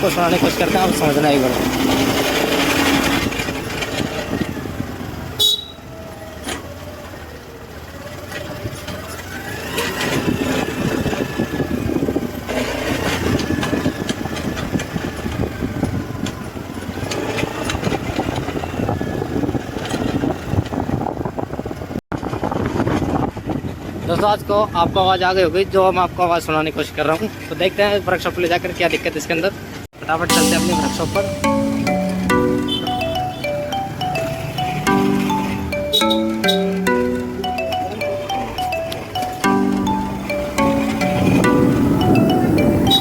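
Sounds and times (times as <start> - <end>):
noise from rear gears: 0.0 - 5.6, 6.3 - 15.5
scooter engine whine: 0.0 - 20.9, 32.2 - 43.0
brief sharp sound: 30.3 - 33.6.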